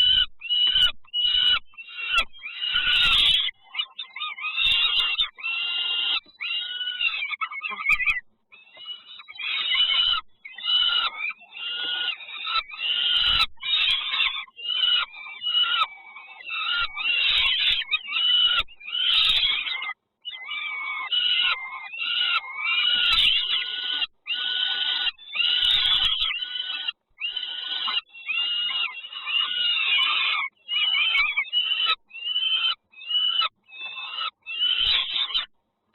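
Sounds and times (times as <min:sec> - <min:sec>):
chicks calling harshly: 0:00.0 - 0:35.5.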